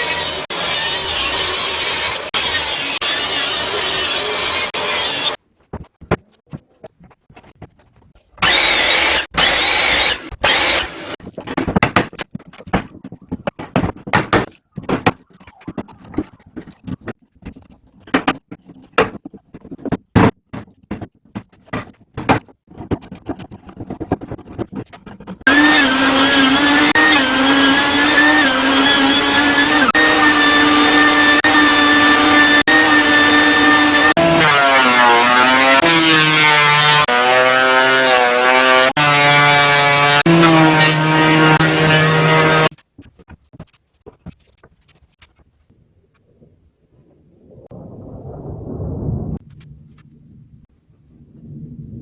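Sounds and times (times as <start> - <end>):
power tool cutting wood: 0.0 - 5.4, 8.4 - 11.2, 25.5 - 42.7
power tool whine: 8.4 - 11.2, 25.5 - 42.7
boards knocking and clattering: 10.3 - 29.6, 41.2 - 45.5.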